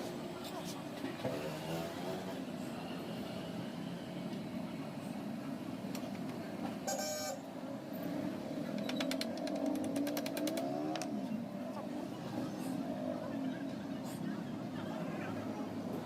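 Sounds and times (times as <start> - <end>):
vehicle engine: 0.0 - 16.0
horn beep: 6.8 - 7.5.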